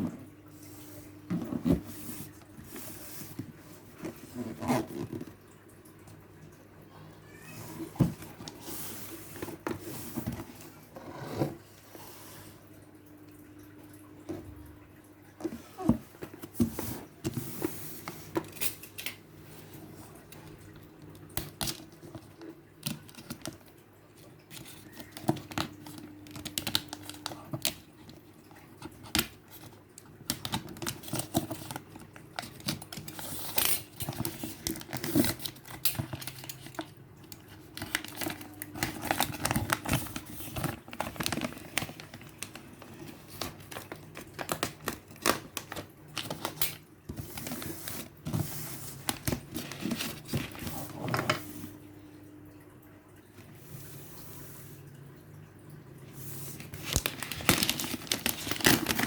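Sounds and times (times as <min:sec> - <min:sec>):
cardboard and plastic packaging crinkling: 0:24.4 - 0:51.8, 0:56.5 - 0:59.0.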